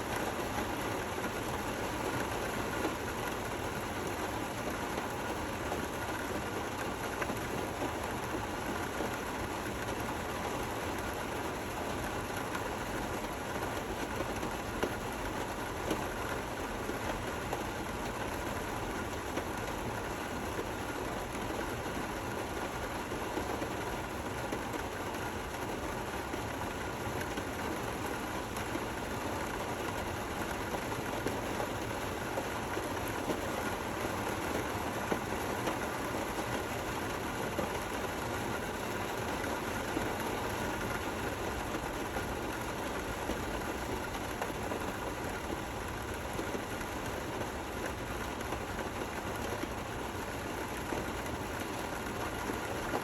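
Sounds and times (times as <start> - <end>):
gentle rain falling: 0.0 - 53.0.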